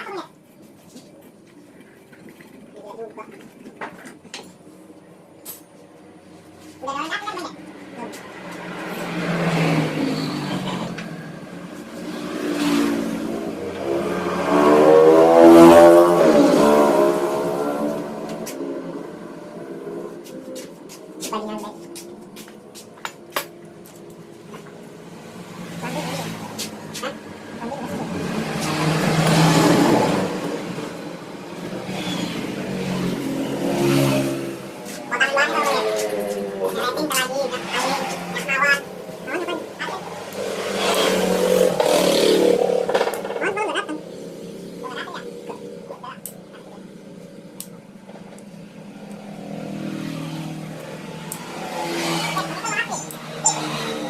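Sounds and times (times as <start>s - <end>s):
vehicle engine revving: 7.6s - 22.7s, 23.8s - 54.0s.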